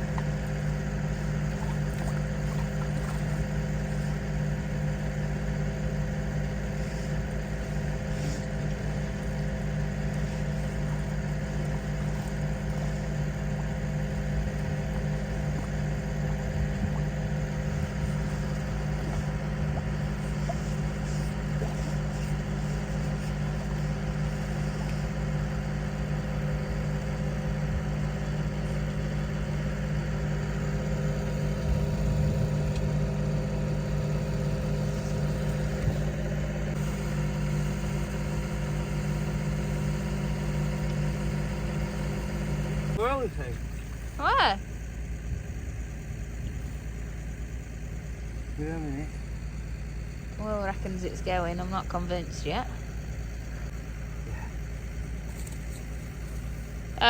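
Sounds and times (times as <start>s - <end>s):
engine running steadily: 0.0s - 57.0s.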